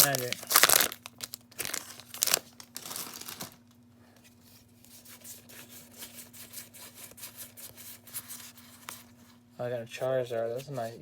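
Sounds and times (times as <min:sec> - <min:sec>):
foil wrapper crinkling and tearing: 0:00.0 - 0:03.7.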